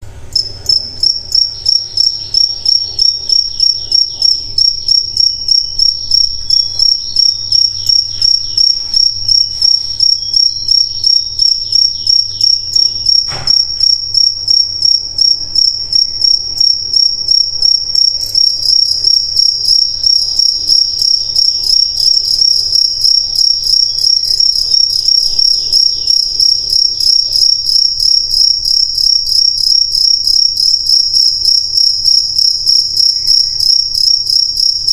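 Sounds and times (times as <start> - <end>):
crickets chirping: 0.3 - 34.9
sharp click: 13.3 - 13.7.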